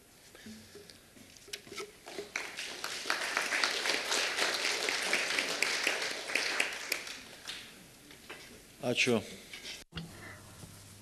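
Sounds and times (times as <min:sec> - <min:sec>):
audience applauding: 0:02.2 - 0:07.6.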